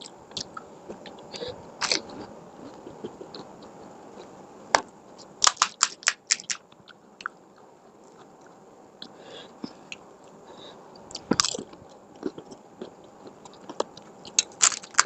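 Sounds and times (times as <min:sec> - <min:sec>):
soft chewing: 0:00.0 - 0:15.0
crunching crisp food: 0:01.8 - 0:04.3, 0:05.2 - 0:08.6, 0:11.0 - 0:15.0.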